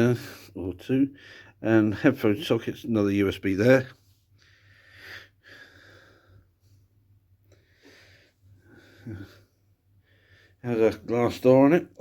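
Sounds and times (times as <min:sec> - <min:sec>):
soft breathing close to microphone: 0:04.0 - 0:10.7.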